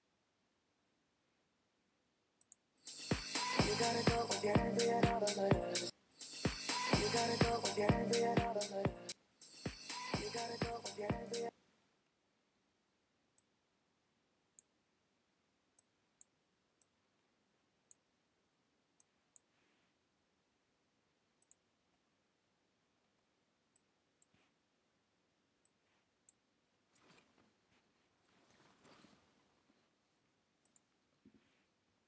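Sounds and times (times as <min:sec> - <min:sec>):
computer mouse clicks: 0:02.4 - 0:02.6, 0:21.4 - 0:21.7, 0:30.6 - 0:30.9
soft rustle: 0:26.8 - 0:30.4, 0:31.2 - 0:31.9.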